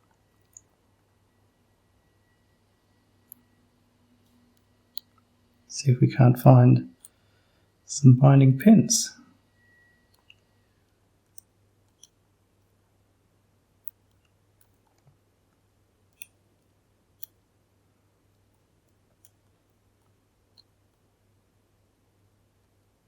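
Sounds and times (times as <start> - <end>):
faint metallic ticks of lock pick: 3.2 - 3.6, 7.0 - 7.2, 11.3 - 12.2, 13.8 - 15.0, 16.1 - 16.4, 17.2 - 17.4, 18.6 - 21.0.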